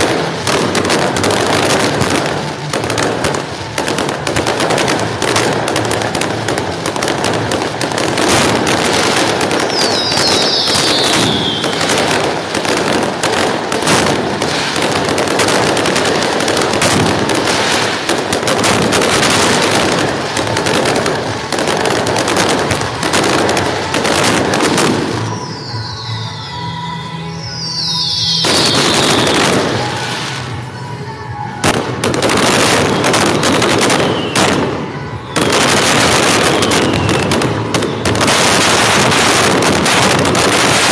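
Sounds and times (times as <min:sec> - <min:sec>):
fireworks cracks and bangs: 0:00.0 - 0:40.9
falling firework whistle: 0:07.8 - 0:20.2, 0:20.9 - 0:40.9.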